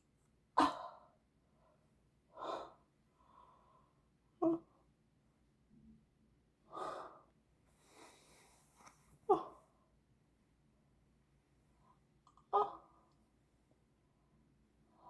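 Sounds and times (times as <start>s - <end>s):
faint breaths: 6.7s - 9.2s.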